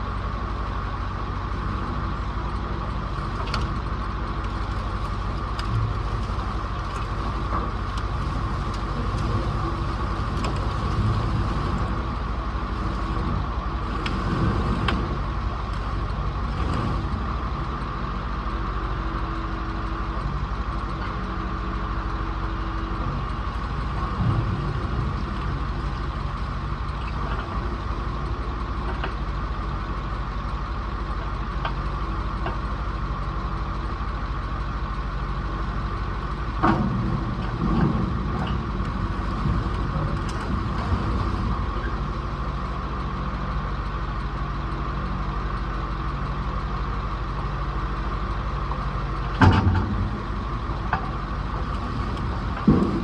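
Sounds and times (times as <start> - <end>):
vehicle engine running: 0.0 - 53.0
short clunks: 49.2 - 53.0.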